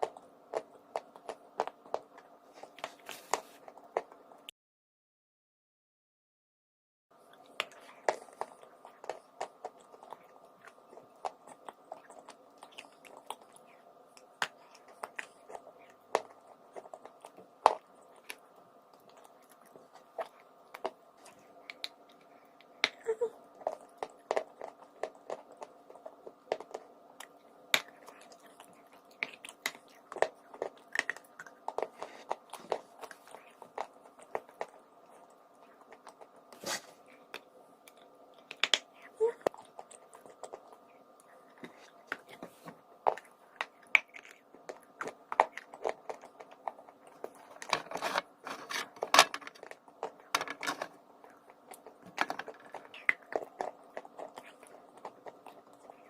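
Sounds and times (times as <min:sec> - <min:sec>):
chewing crunchy chalk: 0:00.0 - 0:04.2, 0:07.3 - 0:56.0
faint steady hum: 0:00.0 - 0:04.5, 0:07.1 - 0:56.0.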